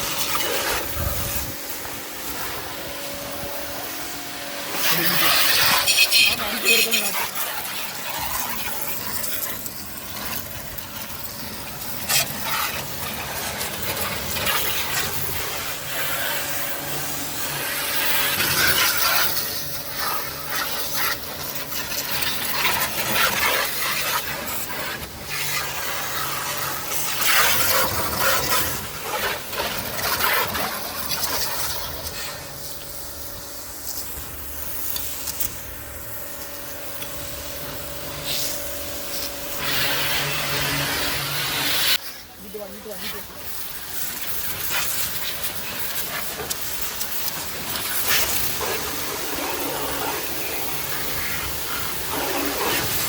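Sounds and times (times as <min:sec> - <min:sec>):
washer motor humming: 0:00.0 - 0:33.4
pressure washer water spray: 0:00.0 - 0:53.0.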